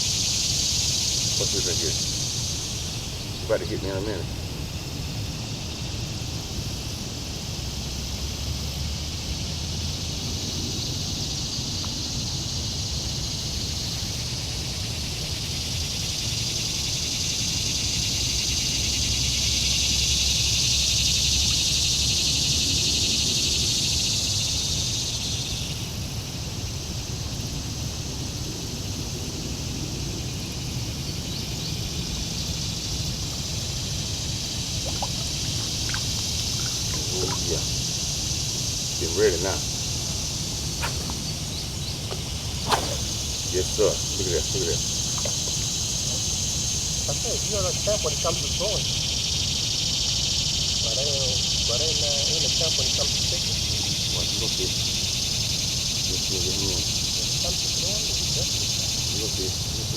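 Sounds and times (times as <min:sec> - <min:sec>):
insect chorus: 0:00.0 - 0:59.9.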